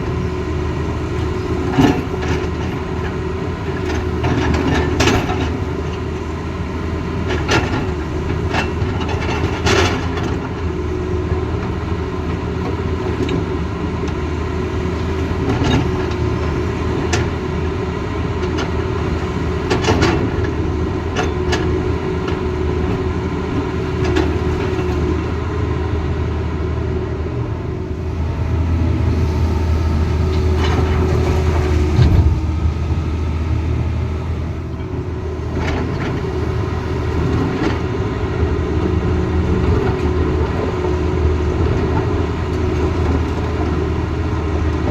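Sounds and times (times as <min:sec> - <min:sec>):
excavator diesel engine: 0:00.0 - 0:44.9
hydraulic whine: 0:27.9 - 0:34.9
metal clanks and knocks: 0:30.3 - 0:32.8.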